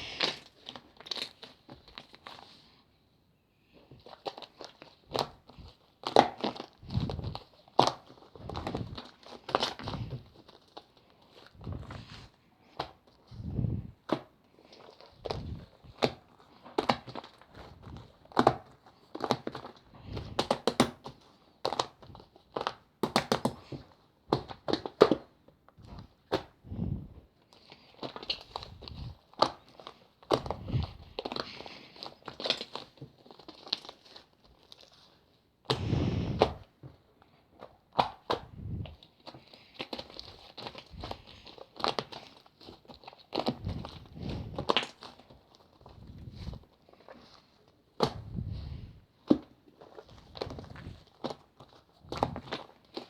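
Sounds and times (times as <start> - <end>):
slime squished by hand: 37.9 - 53.0.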